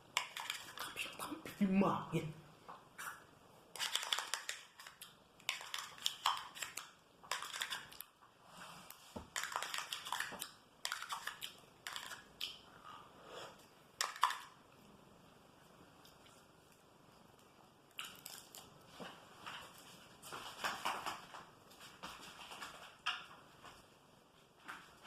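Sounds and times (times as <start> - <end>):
person eating yogurt: 0.0 - 1.6, 2.8 - 8.2, 8.8 - 18.9.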